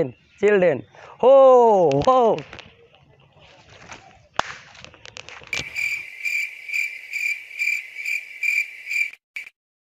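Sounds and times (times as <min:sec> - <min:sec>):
cricket-like chirping: 0:05.6 - 0:09.6.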